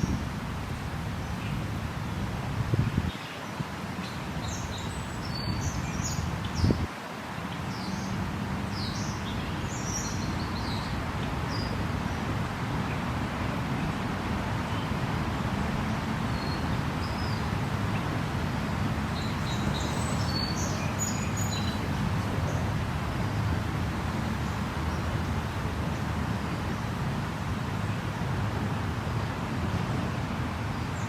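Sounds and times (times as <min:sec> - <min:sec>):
birds chirping: 0:19.0 - 0:23.6.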